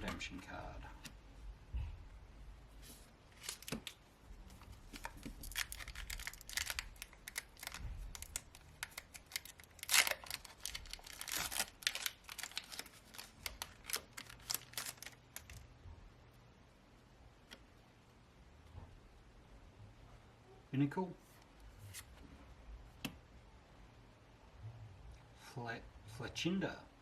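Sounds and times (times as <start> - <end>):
foil wrapper crinkling: 3.3 - 4.0, 4.8 - 15.6.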